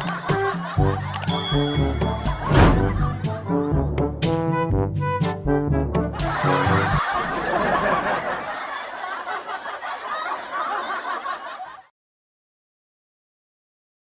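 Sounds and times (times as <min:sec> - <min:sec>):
crowd laughter: 0:00.0 - 0:01.2, 0:06.2 - 0:11.9.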